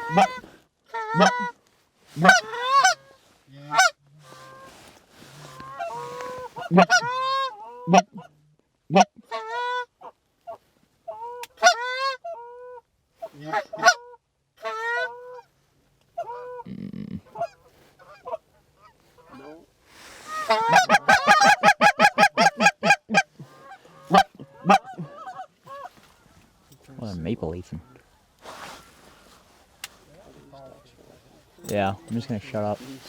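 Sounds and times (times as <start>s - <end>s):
goose honking: 0.0s - 1.6s, 2.2s - 4.7s, 5.5s - 8.3s, 8.9s - 12.8s, 13.4s - 15.5s, 20.2s - 26.4s.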